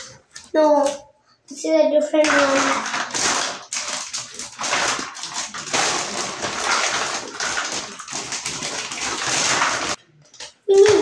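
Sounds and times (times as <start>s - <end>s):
rummaging through plastic bags: 2.3s - 11.0s.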